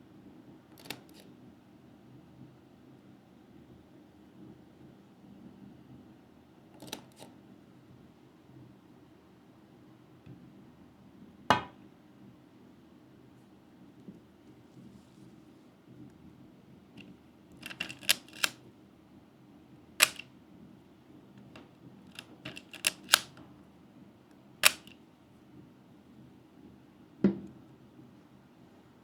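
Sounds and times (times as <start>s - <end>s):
camera shutter clicks: 17.6s - 18.6s, 20.0s - 20.2s, 22.5s - 23.3s, 24.6s - 24.9s.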